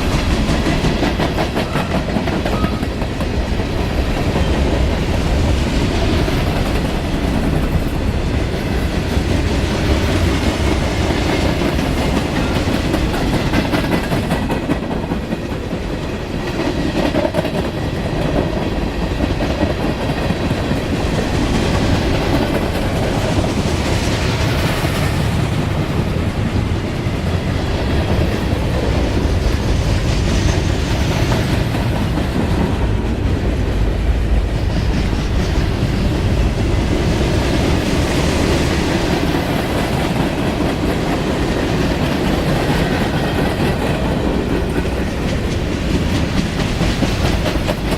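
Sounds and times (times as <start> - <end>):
train cars rolling past: 0.0 - 47.9
wheels clicking over rail joints: 39.3 - 47.9.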